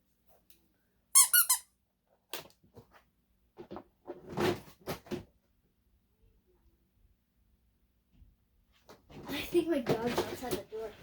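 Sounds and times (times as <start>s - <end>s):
rustling and clattering: 2.2s - 5.5s, 8.7s - 11.0s.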